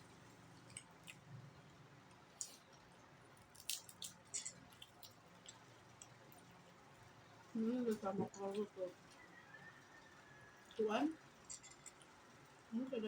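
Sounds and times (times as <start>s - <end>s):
low steady hum: 0.0s - 13.0s
person chewing crispy food: 0.2s - 7.2s.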